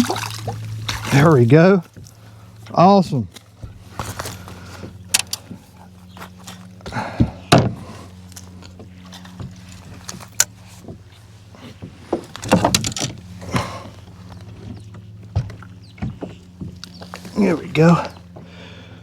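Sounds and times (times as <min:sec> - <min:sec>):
fish being handled in a kayak: 0:00.0 - 0:19.0
scuffling: 0:03.3 - 0:07.4.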